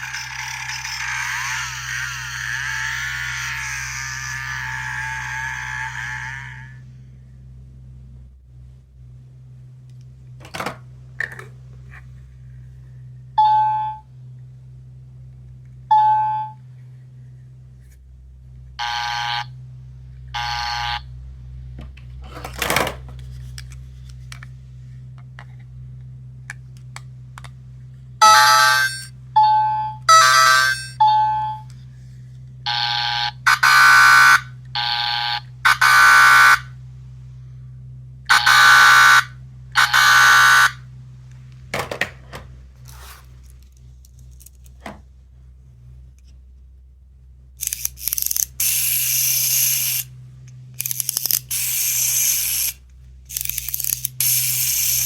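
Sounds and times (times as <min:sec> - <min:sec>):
electronic buzzer tones: 0:18.8 - 0:19.6, 0:20.3 - 0:21.1, 0:28.2 - 0:31.7, 0:32.7 - 0:36.8, 0:38.3 - 0:40.9
toy clicks: 0:47.6 - 0:50.1, 0:50.8 - 0:55.0.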